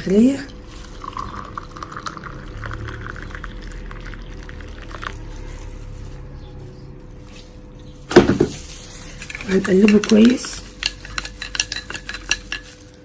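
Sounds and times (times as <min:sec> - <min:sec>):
water pouring into a cup: 0:00.0 - 0:05.8.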